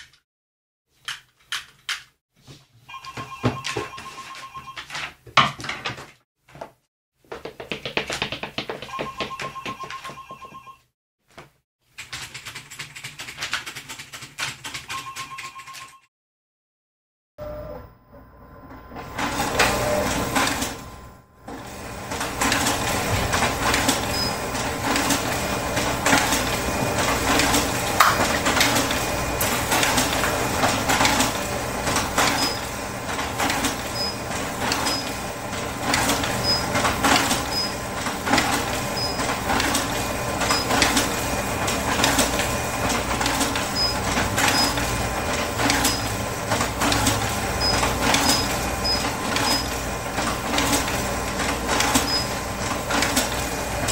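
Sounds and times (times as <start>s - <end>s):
machine hum: 17.4s - 53.9s.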